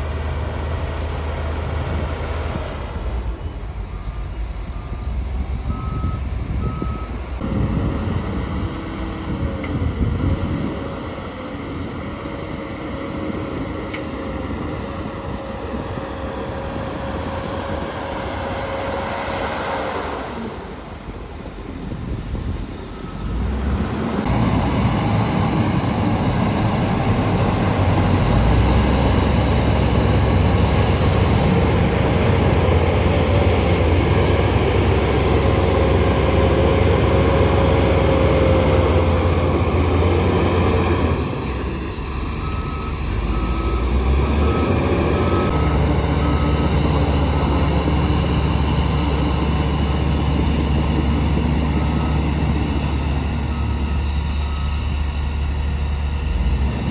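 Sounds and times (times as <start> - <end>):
heavy diesel engine under load: 0.0 - 56.9.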